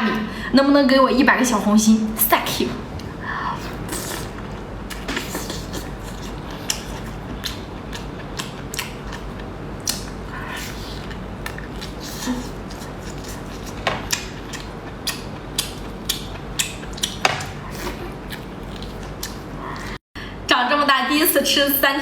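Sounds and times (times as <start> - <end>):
person crunching fried food: 5.3 - 19.8.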